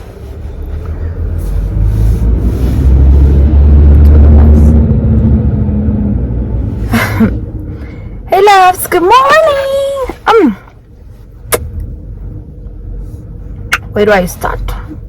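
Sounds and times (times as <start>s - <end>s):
loud low rumble: 0.0s - 8.3s.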